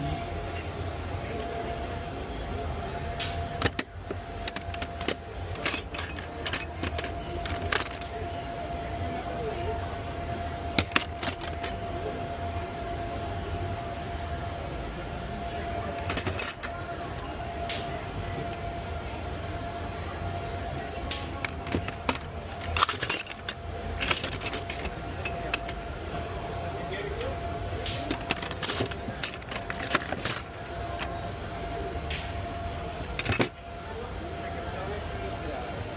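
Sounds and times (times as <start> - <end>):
steady background hum: 0.0 - 35.9
metal tools clinking: 3.6 - 8.2, 10.8 - 11.8, 15.9 - 18.7, 21.4 - 25.9, 27.9 - 31.2, 33.1 - 33.6.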